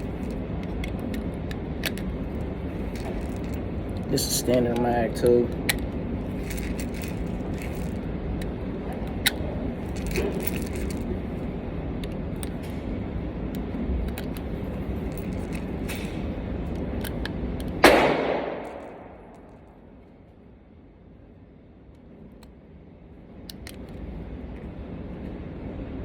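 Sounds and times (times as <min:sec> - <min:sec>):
steady background noise: 0:00.0 - 0:26.0
pistol shot: 0:17.8 - 0:19.3.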